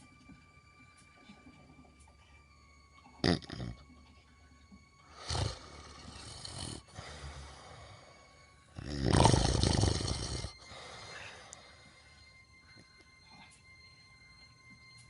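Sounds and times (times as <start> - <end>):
person snoring: 3.2 - 3.8, 5.1 - 8.2, 8.8 - 11.8.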